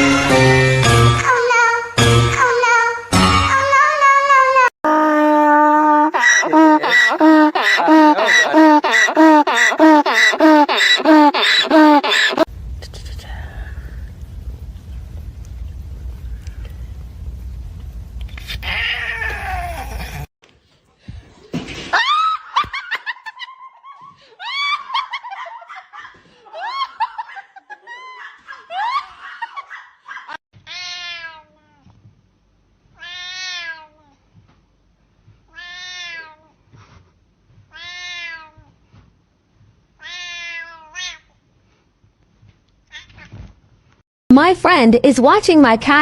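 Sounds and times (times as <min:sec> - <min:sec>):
cat meowing: 0:37.7 - 0:38.6, 0:40.0 - 0:41.2.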